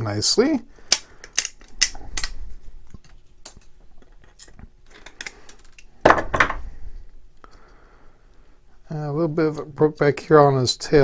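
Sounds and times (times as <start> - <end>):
plastic snapping and cracking: 0.9 - 2.4.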